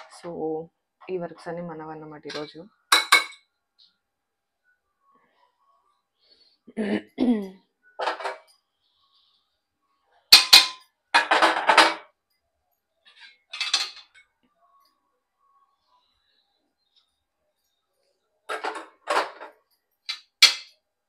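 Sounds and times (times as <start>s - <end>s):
dishes and utensils clanking: 2.2s - 3.5s, 8.0s - 8.6s, 10.3s - 12.2s, 13.1s - 14.3s, 18.5s - 20.8s.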